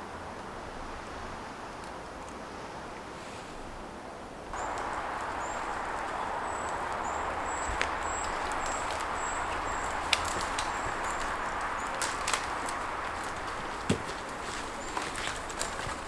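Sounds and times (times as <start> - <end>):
steady outdoor hiss: 0.0 - 16.0
small bird high calls: 4.6 - 13.8.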